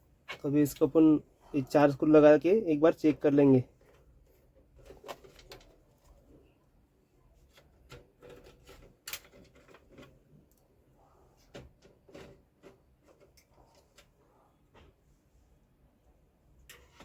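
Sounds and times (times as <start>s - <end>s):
plastic parts clicking: 4.7s - 5.8s, 7.4s - 10.6s.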